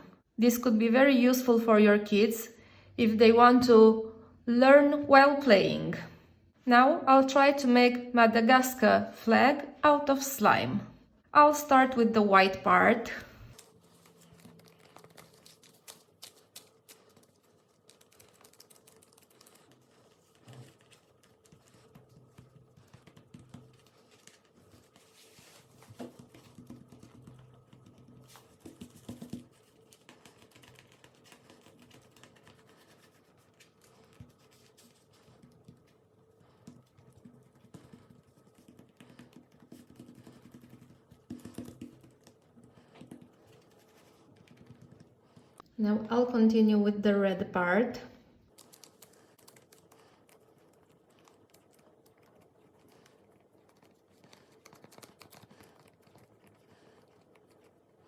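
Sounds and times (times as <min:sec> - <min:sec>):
slime clicking and crackling: 0:13.6 - 0:24.6.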